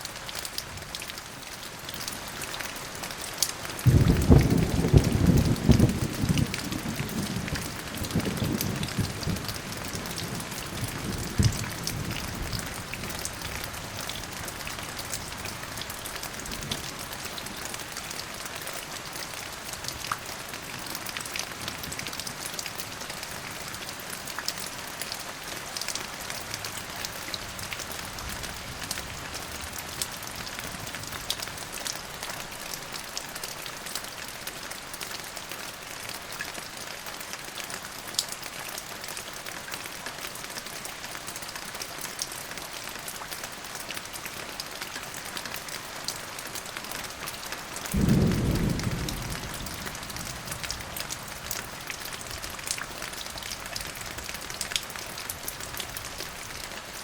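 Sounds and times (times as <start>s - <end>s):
steady rain pattering: 0.0s - 57.0s
sharp thunder clap: 3.9s - 7.4s, 48.0s - 50.4s
thunder rolling: 3.9s - 9.4s, 48.0s - 50.9s.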